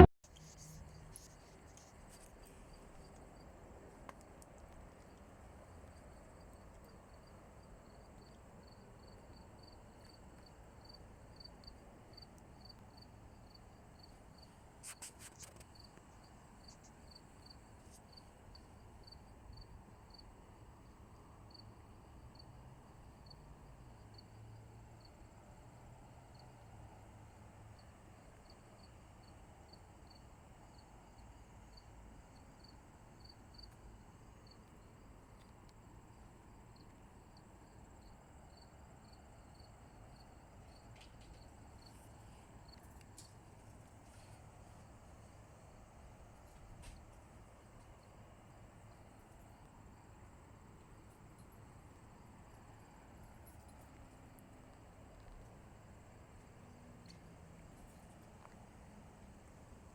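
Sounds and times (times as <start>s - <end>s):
cricket chirping: 0.0s - 59.9s
cluster of clicks: 3.9s - 5.3s.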